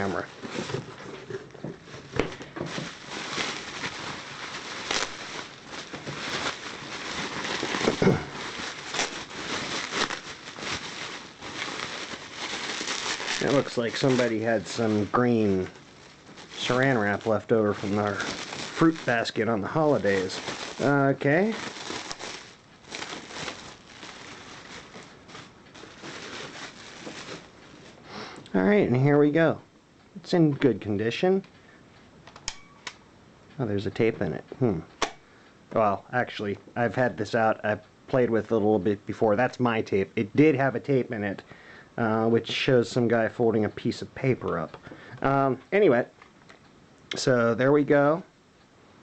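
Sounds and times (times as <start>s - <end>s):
cling wrap crinkling: 0.0s - 29.3s.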